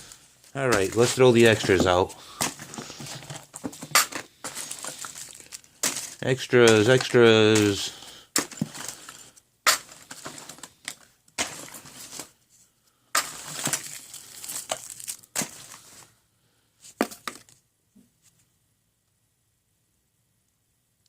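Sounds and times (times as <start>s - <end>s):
bags rustling: 0.0s - 12.4s, 13.2s - 16.1s
small items clattering: 0.0s - 12.4s, 13.1s - 16.1s, 17.0s - 17.6s.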